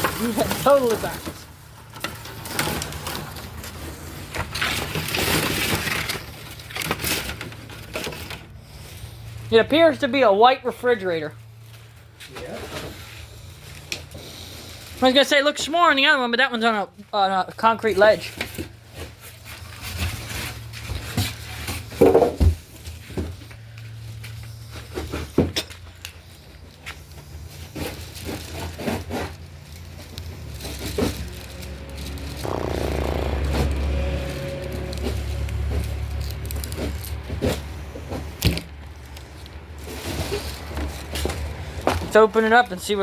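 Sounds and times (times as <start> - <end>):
steady low rumble: 30.5 - 36.1.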